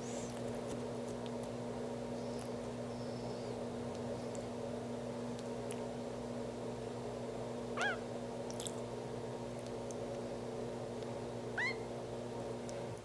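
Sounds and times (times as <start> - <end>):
steady low hum: 0.0 - 13.0
lizard burping squeaky chirp: 7.8 - 8.0.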